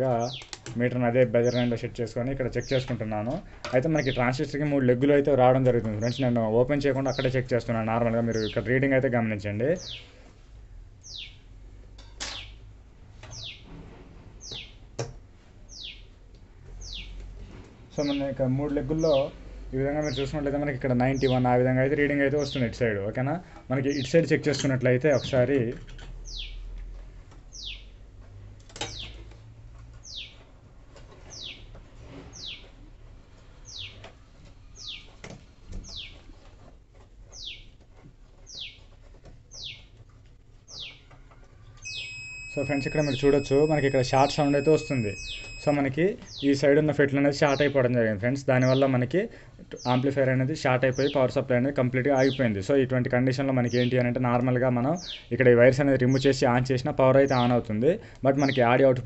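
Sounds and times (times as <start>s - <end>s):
bird chirping: 0.0s - 0.6s, 1.3s - 4.6s, 5.8s - 7.6s, 8.2s - 8.8s, 9.7s - 10.2s, 11.0s - 11.5s, 13.3s - 13.7s, 14.4s - 14.8s, 15.6s - 16.2s, 16.8s - 17.2s, 18.9s - 21.5s, 22.2s - 22.8s, 23.8s - 24.2s, 26.2s - 26.7s, 27.5s - 28.0s, 28.8s - 29.2s, 30.0s - 30.5s, 31.2s - 31.7s, 32.3s - 32.8s, 33.6s - 34.0s, 34.7s - 35.2s, 35.8s - 36.3s, 37.3s - 37.8s, 38.4s - 40.0s, 40.6s - 47.8s, 50.8s - 51.4s, 52.1s - 52.6s, 53.6s - 54.1s, 54.8s - 55.3s, 57.2s - 57.6s
faint low hum: 41.4s - 46.2s.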